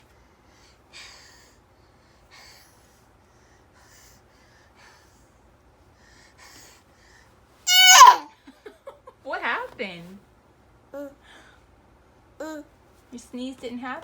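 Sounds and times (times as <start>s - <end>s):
baby snorting sniffing breaths: 0.4s - 7.4s.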